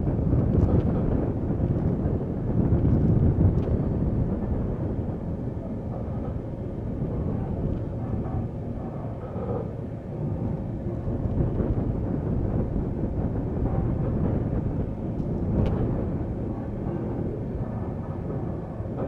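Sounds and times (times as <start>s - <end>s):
train rumbling along track: 0.0s - 19.0s.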